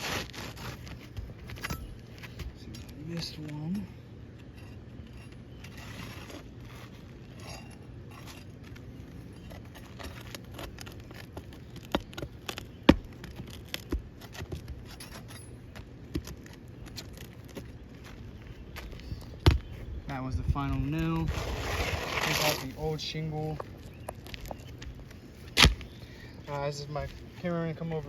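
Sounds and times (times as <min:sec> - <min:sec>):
metal scraping: 0:04.4 - 0:11.1.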